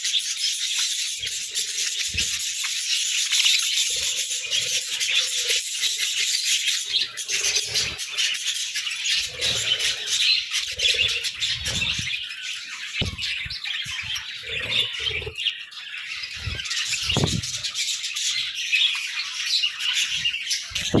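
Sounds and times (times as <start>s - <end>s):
budgerigars chattering and chirping: 0.0s - 21.0s
wings fluttering: 10.6s - 12.3s, 16.3s - 17.8s.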